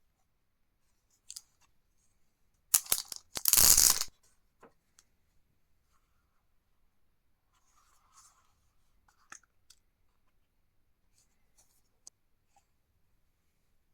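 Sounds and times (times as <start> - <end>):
packet crinkling: 2.8 - 4.1
packet ripping: 2.8 - 4.1.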